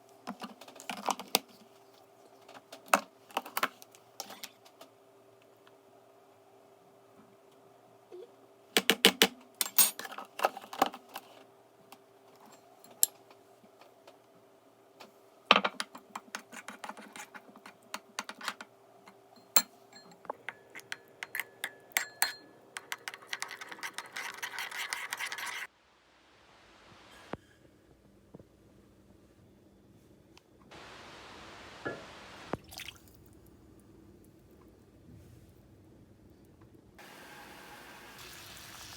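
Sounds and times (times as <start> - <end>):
utensils and dishes clicking: 20.0 - 25.7
faint steady hum: 25.7 - 38.9
steady hiss: 30.7 - 32.6.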